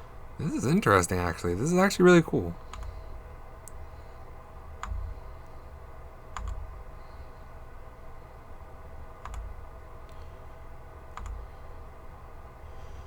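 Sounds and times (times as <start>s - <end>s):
keyboard key presses: 9.2s - 9.5s.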